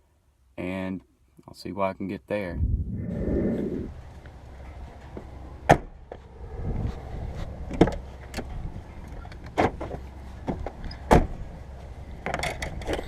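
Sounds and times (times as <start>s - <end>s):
low rumble: 2.5s - 4.3s.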